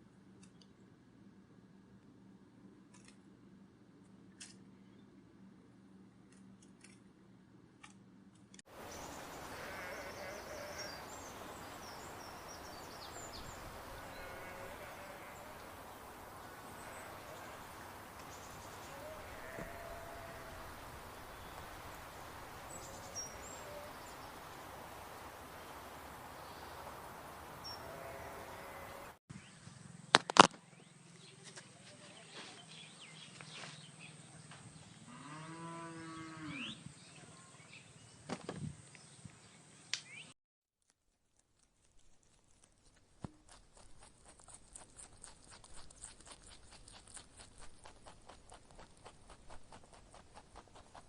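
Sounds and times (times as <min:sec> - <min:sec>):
animal call: 0:08.8 - 0:29.2
light ticks or pattering: 0:40.8 - 0:51.0.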